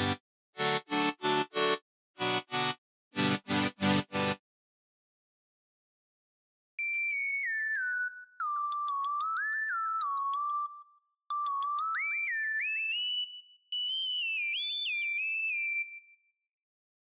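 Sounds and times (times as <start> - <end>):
whistle-like synthesizer melody: 6.8 - 16.5.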